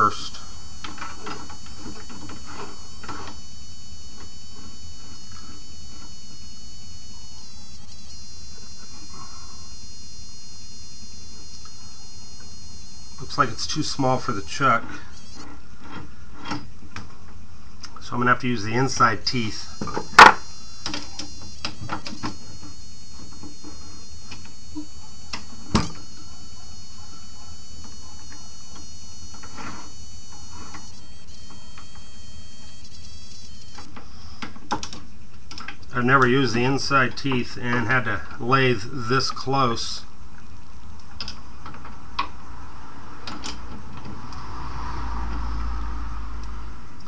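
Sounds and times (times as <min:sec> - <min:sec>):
high-pitched electric whine: 0:00.0 - 0:47.0.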